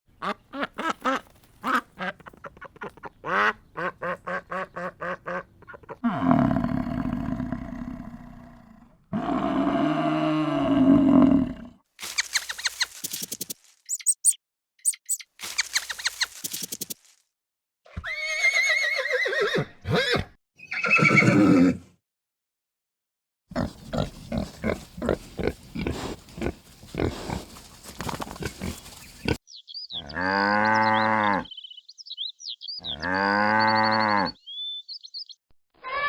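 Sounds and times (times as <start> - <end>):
duck quacking: 0.2 - 6.0
short sharp high-pitched calls: 12.0 - 17.0.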